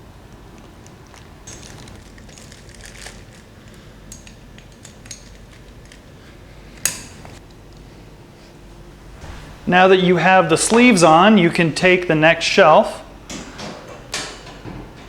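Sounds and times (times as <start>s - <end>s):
plastic sleeves clicking and crackling: 0.6s - 6.0s.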